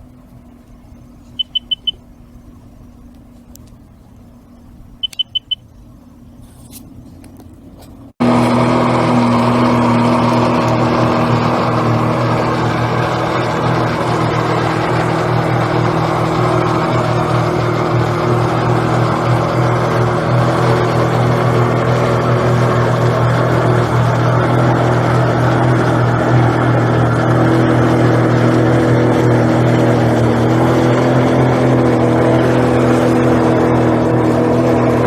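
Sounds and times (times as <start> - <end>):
jet ski engine running: 0.0 - 35.0
high beeps: 1.4 - 2.0, 5.0 - 5.6.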